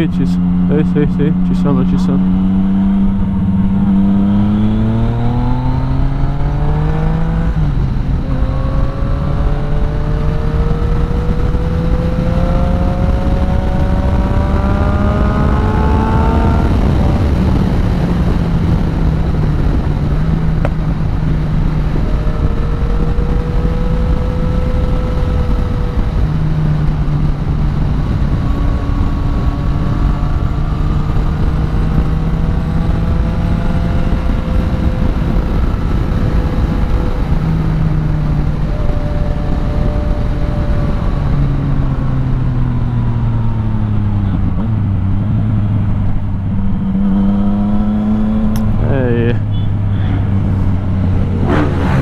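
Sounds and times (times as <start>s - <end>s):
motorcycle engine revving: 0.0s - 52.0s
wind rushing: 46.1s - 52.0s.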